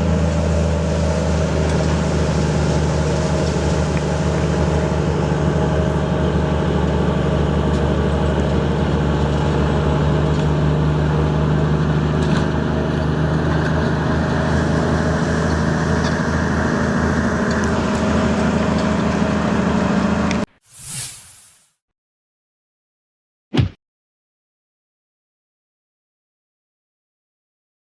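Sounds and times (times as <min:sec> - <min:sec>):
burst of hiss: 0:20.6 - 0:21.8.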